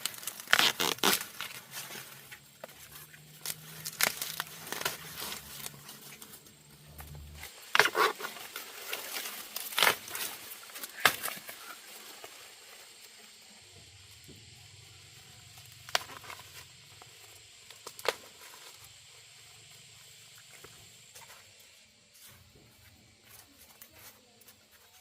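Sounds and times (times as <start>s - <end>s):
dry rustling and crackling: 0.0s - 14.3s.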